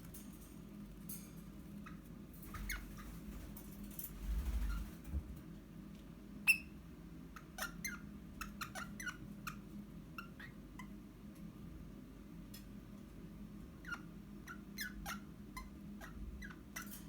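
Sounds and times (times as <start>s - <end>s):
faint steady hum: 0.0s - 17.0s
bird chirping: 1.8s - 3.2s, 6.5s - 6.7s, 7.4s - 9.6s.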